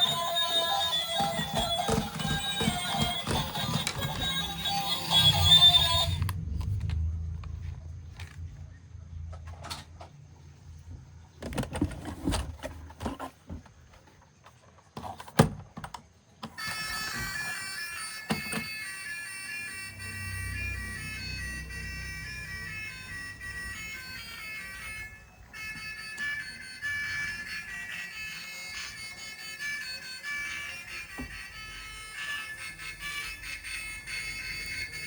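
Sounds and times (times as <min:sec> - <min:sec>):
plastic toys clicking and rattling: 0:00.0 - 0:06.3.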